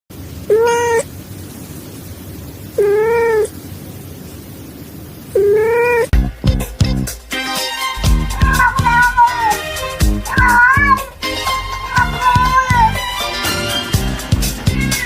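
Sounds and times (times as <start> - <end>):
cat meowing: 0.5 - 1.1, 2.8 - 3.6, 5.4 - 6.1, 8.0 - 13.9, 14.7 - 15.0.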